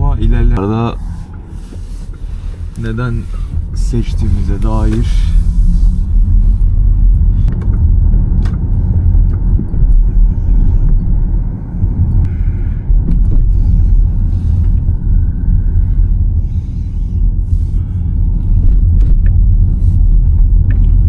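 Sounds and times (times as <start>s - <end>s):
road and tyre noise: 0.0s - 21.0s.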